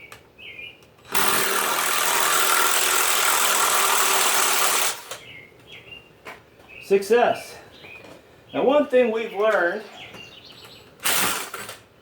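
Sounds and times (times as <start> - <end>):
electric drill running: 1.1 - 5.2, 11.0 - 11.8.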